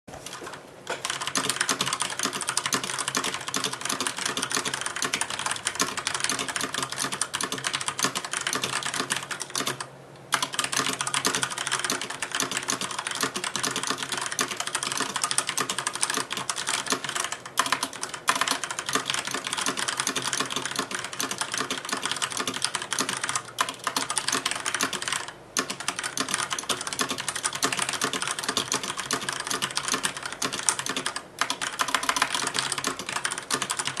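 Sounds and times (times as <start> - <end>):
mechanical keyboard typing: 0.2 - 34.0.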